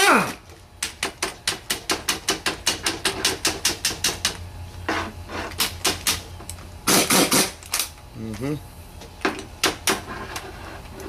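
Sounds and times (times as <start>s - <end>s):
pneumatic impact wrench hammering: 0.0s - 4.4s, 5.4s - 7.9s.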